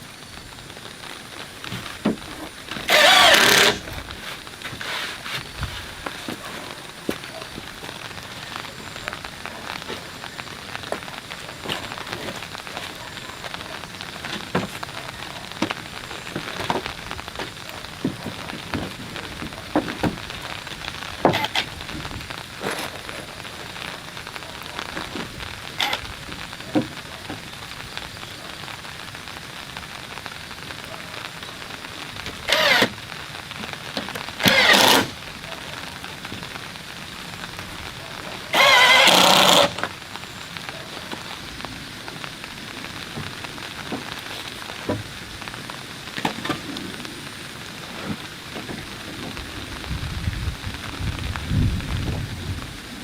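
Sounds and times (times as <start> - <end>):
rain pattering: 0.0 - 53.0.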